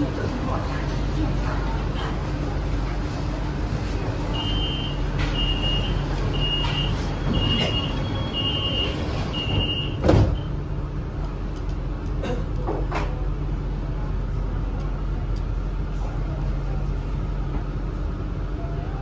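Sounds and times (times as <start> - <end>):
train low hum: 0.0 - 19.0
high warning beeps: 4.3 - 10.6
doors shutting thump: 9.4 - 10.5.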